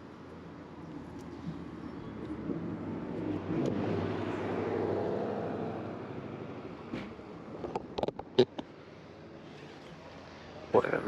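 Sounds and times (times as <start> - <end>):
vehicle driving past: 2.4 - 7.0.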